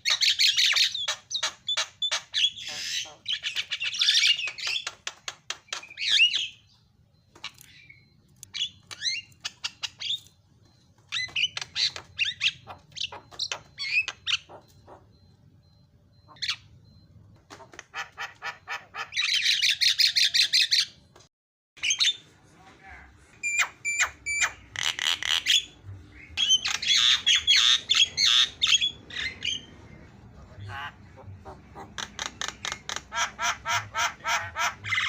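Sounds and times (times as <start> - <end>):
bird harsh chatter: 0.0 - 5.0.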